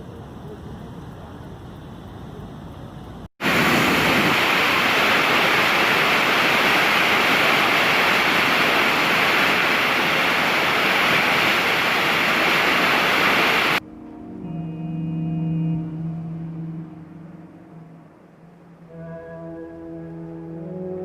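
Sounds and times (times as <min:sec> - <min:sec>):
rush of water: 0:03.4 - 0:13.8.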